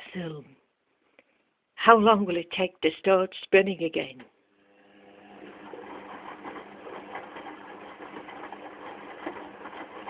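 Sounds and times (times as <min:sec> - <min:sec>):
washing machine motor hum: 0:04.6 - 0:10.0.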